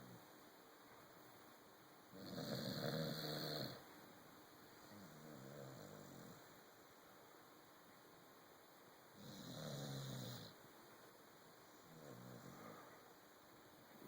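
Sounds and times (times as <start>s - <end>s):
dog snoring: 2.1s - 3.8s, 4.9s - 6.4s, 9.2s - 10.6s, 11.8s - 12.9s.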